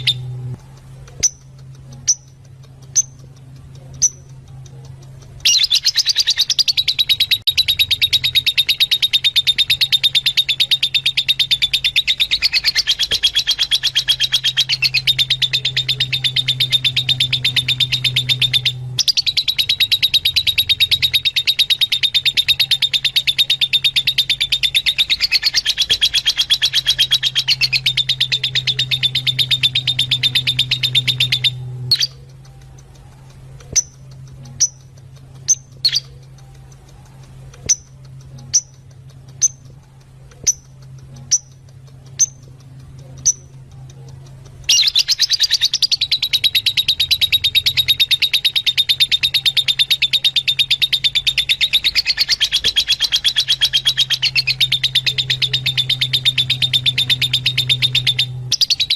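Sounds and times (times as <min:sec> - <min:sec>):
lovebirds chattering: 0:00.0 - 0:58.9
steady low hum: 0:00.0 - 0:58.9
sharp bird chirps: 0:01.2 - 0:03.2, 0:05.4 - 0:32.4, 0:33.7 - 0:36.4, 0:44.6 - 0:58.9.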